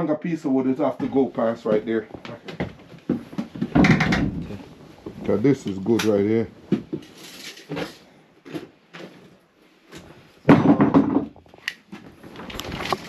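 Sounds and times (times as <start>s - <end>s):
lumber knocking and clunking: 1.0s - 5.2s, 10.5s - 11.5s
wood scraping: 11.3s - 13.0s.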